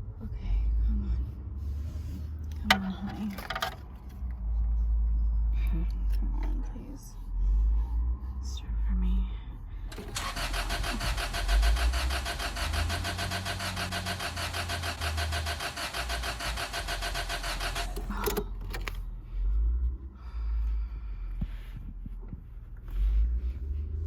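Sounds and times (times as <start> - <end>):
starter motor cranking engine: 9.9 - 18.9
starter clunk: 9.9 - 19.0.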